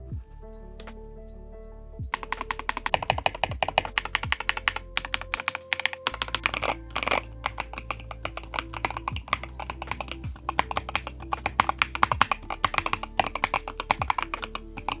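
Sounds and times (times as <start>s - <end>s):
mechanical keyboard typing: 2.2s - 15.0s.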